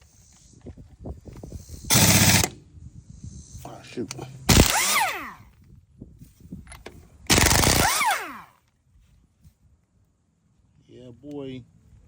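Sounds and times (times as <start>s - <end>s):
air impact wrench hammering: 1.9s - 2.5s, 7.3s - 8.4s.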